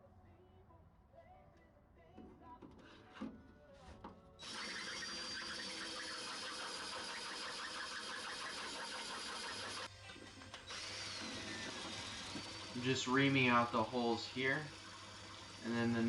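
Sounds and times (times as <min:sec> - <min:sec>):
cordless drill whining: 0:04.4 - 0:16.0.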